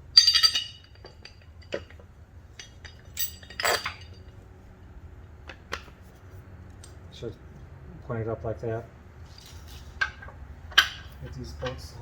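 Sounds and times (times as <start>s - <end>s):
steel bolts clinking: 0.1s - 4.4s, 10.0s - 12.0s.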